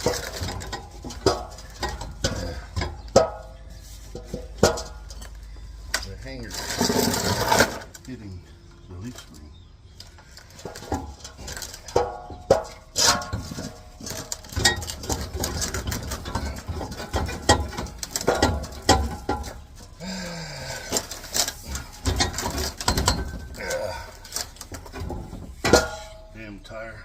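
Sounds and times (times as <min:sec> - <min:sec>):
metal pipe clanking and scraping: 0:00.0 - 0:08.3, 0:09.9 - 0:26.9
person grunting: 0:20.0 - 0:20.9.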